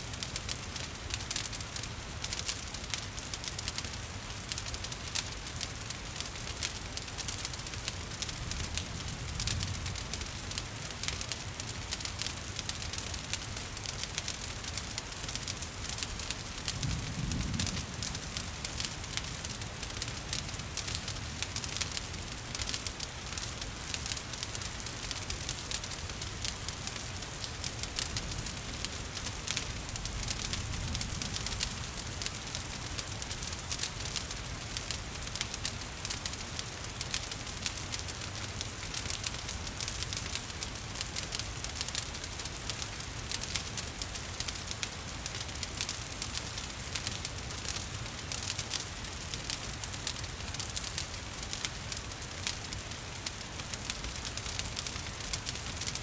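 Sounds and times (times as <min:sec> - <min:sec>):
wood fire crackling and popping: 0:00.0 - 0:56.0
rain falling: 0:00.2 - 0:56.0.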